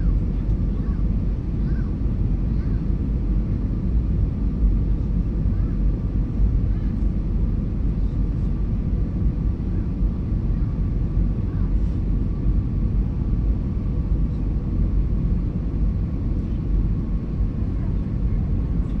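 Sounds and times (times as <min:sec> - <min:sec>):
airplane cabin engine rumble: 0:00.0 - 0:19.0.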